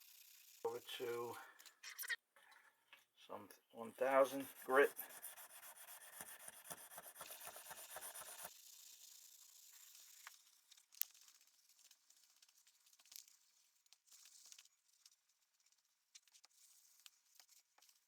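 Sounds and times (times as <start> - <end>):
faint hiss: 0.0 - 1.5
sandpaper rubbing on steel blade: 4.0 - 8.6.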